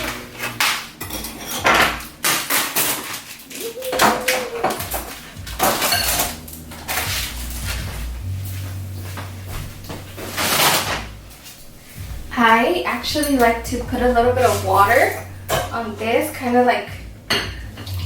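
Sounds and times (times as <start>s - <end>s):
dishes and utensils clinking: 0.0s - 7.9s, 14.4s - 16.6s, 17.3s - 18.0s.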